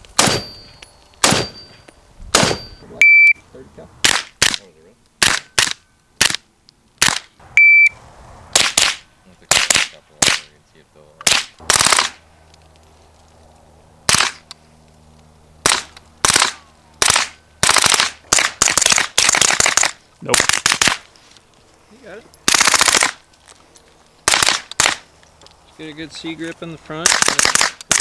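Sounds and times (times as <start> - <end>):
gunshots: 0.2 - 2.8, 4.0 - 6.4, 7.0 - 7.3, 8.5 - 10.5, 11.2 - 12.2, 14.1 - 14.4, 15.6 - 21.1, 22.5 - 23.2, 24.2 - 25.1, 27.0 - 28.0
shot timer electronic beep: 2.6 - 3.4, 7.6 - 8.0.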